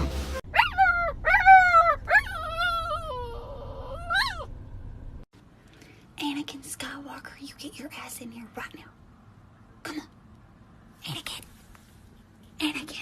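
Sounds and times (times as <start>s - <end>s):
pet animal high-pitched cries: 0.5s - 4.5s.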